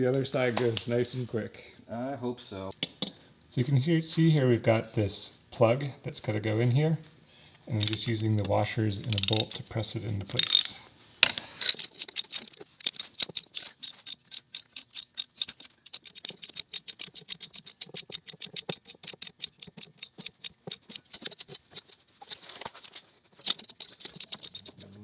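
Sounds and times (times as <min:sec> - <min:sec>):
ratchet wrench clicking: 0:07.8 - 0:08.1, 0:09.1 - 0:09.6, 0:10.4 - 0:10.8, 0:11.7 - 0:21.1, 0:22.4 - 0:25.0.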